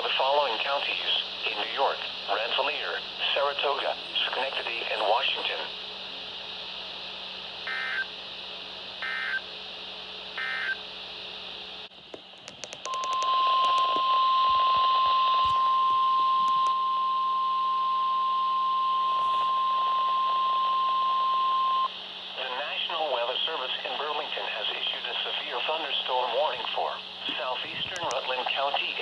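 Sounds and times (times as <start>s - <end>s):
radio hiss: 0.0s - 5.8s, 22.4s - 29.0s
steady alarm tone: 7.7s - 8.1s, 9.0s - 9.4s, 10.4s - 10.8s, 12.8s - 21.9s
clicks: 12.0s - 16.8s, 27.8s - 28.3s.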